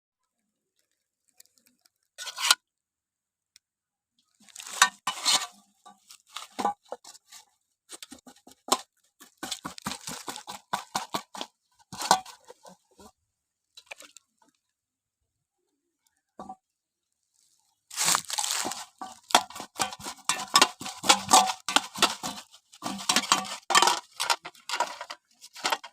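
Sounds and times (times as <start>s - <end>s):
crunchy snack chewing: 17.9s - 19.8s.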